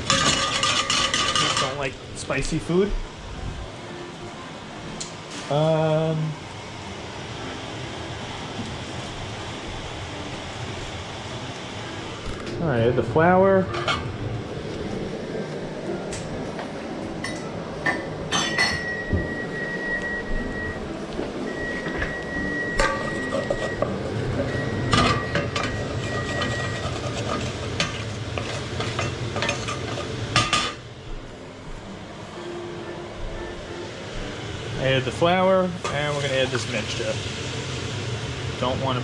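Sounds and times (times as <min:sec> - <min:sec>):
metal utensil scraping frying pan: 0:00.0 - 0:01.8, 0:22.8 - 0:30.8
oil sizzling: 0:04.9 - 0:15.3, 0:21.2 - 0:31.1, 0:33.9 - 0:39.0.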